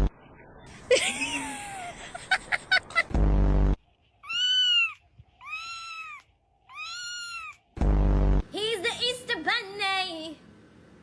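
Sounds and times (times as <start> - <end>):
cat meowing: 4.2 - 7.7.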